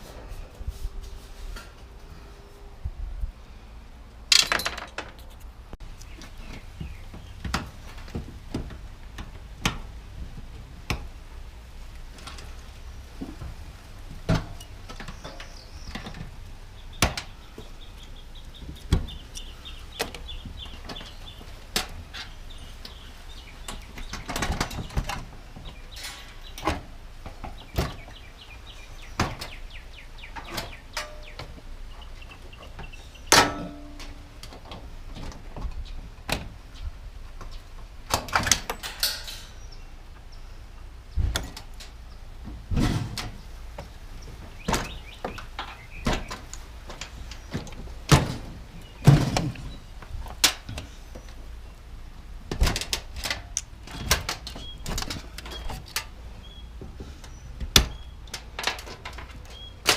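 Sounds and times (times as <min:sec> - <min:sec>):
steady low rumble: 0:00.0 - 0:04.3
objects knocking and thudding: 0:04.3 - 0:05.3, 0:42.4 - 0:50.9.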